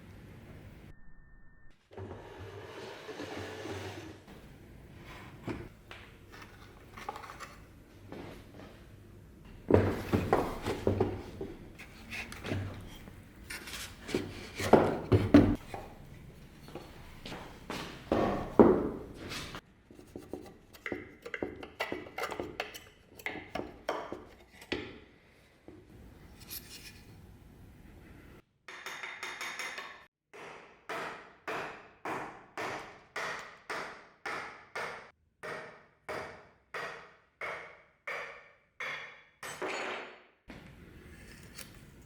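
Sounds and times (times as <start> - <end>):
hammer striking: 28.7 - 40.1.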